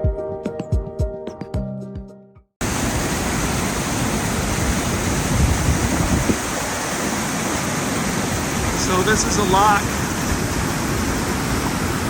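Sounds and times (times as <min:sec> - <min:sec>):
background music: 0:00.0 - 0:02.5
water rushing: 0:02.6 - 0:12.0.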